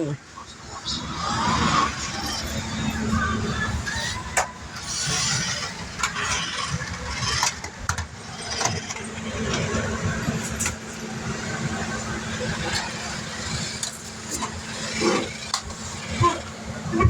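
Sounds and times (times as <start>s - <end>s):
toy car motors whirring: 2.1s - 9.7s, 12.6s - 16.5s.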